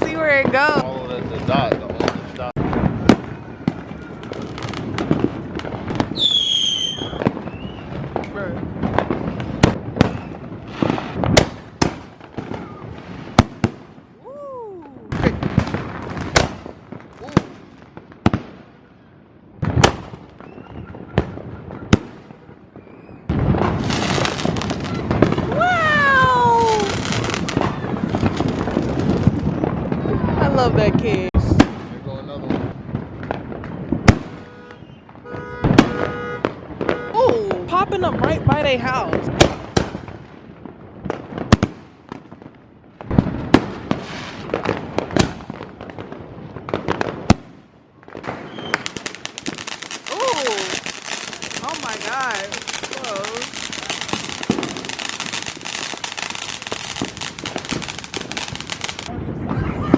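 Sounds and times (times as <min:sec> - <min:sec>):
firework crackling: 0:00.0 - 0:18.9, 0:19.6 - 0:59.9
firework bangs: 0:00.0 - 0:59.9
fireworks crackling hiss: 0:22.8 - 0:32.5, 0:43.1 - 0:45.6, 0:48.2 - 0:59.1.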